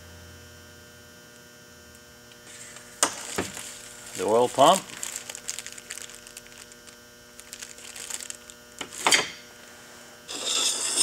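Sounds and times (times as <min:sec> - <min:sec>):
electrical hum: 0:00.0 - 0:11.0
sharp scrape: 0:10.3 - 0:11.0.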